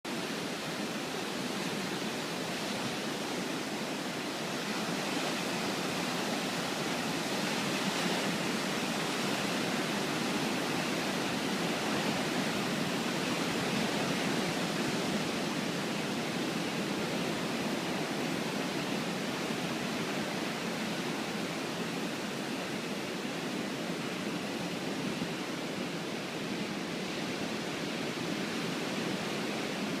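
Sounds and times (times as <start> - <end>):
ocean surf washing onto shore: 0.1 - 30.0.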